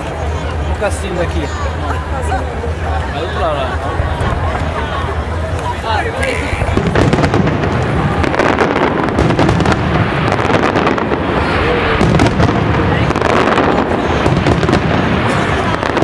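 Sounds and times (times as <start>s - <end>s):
fireworks bangs and crackling: 3.8s - 16.0s.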